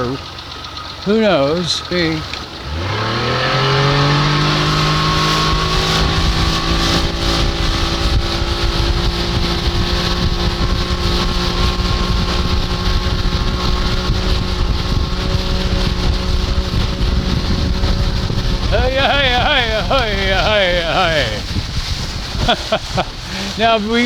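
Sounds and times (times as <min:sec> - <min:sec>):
outboard motor running at high throttle: 0:00.0 - 0:24.0.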